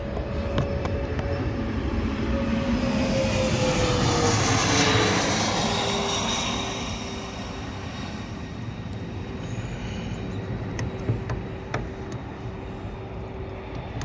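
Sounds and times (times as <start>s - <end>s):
passing vehicle engine: 1.0s - 8.5s.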